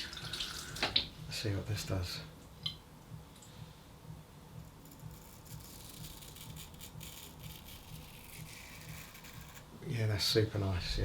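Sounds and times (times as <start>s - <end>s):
razor scraping stubble: 4.6s - 9.7s.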